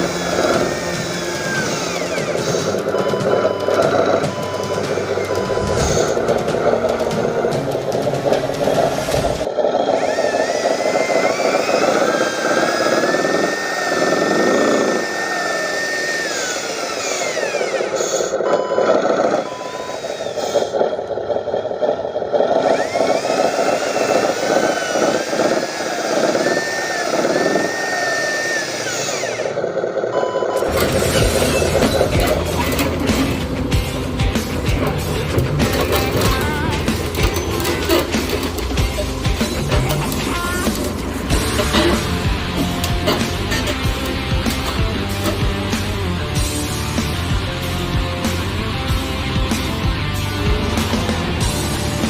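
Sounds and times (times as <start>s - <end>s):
toy truck motors whining: 0.0s - 52.0s
short beeps: 18.4s - 20.0s, 30.1s - 30.9s.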